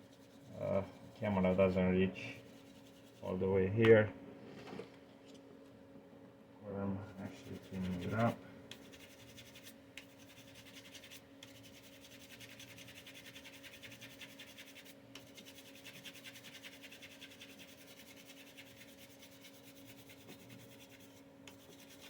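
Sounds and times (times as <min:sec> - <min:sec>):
brush scratching fan blades: 0:00.0 - 0:03.6, 0:07.1 - 0:22.0.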